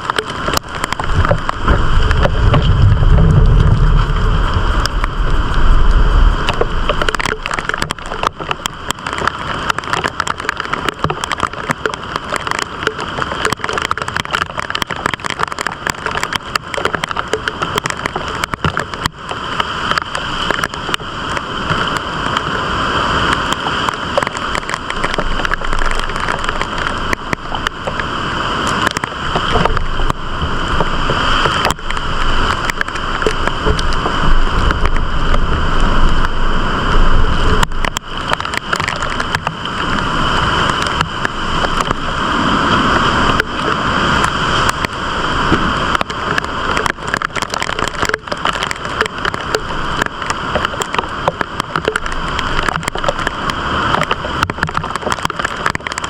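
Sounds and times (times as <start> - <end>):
wind gusts buffeting microphone: 0.0 - 56.0
wind-driven heavy rain: 0.0 - 56.0.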